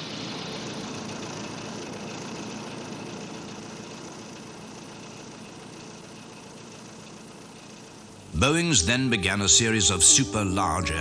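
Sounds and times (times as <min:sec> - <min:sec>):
piston aircraft engines running: 0:00.0 - 0:11.0.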